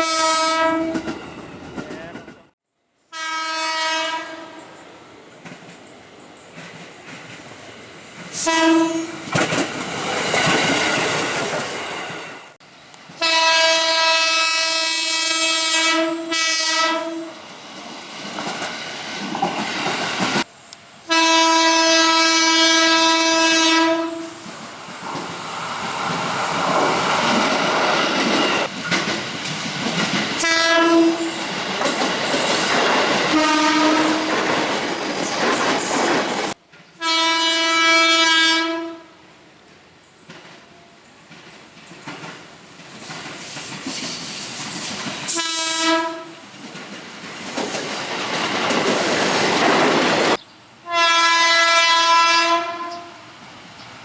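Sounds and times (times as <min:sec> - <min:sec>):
train horn blasts: 0:00.0 - 0:01.1, 0:03.1 - 0:04.6, 0:08.4 - 0:09.2, 0:13.2 - 0:17.4, 0:21.1 - 0:24.4, 0:30.4 - 0:31.3, 0:33.3 - 0:34.2, 0:37.0 - 0:39.2, 0:45.3 - 0:46.4, 0:50.8 - 0:53.3
train rumble and wheel clatter: 0:00.0 - 0:02.6, 0:04.3 - 0:37.0, 0:39.4 - 0:50.4.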